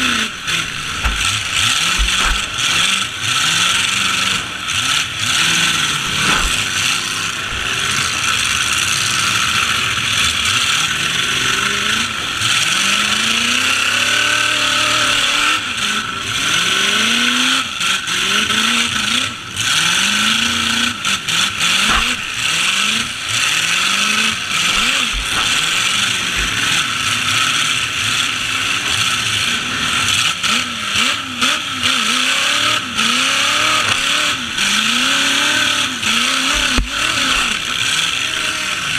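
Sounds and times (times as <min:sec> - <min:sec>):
steady noisy roar: 0:00.0 - 0:38.9
truck engines revving: 0:00.0 - 0:38.9
impact knocks: 0:00.6 - 0:03.0, 0:24.5 - 0:26.8.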